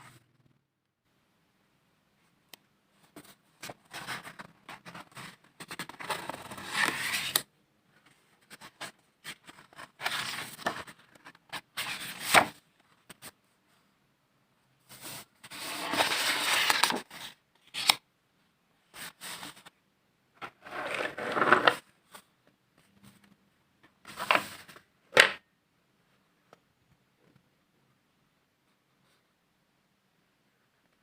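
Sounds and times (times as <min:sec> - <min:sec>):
rustling scraping handling noise: 0:14.9 - 0:17.9, 0:20.4 - 0:22.2.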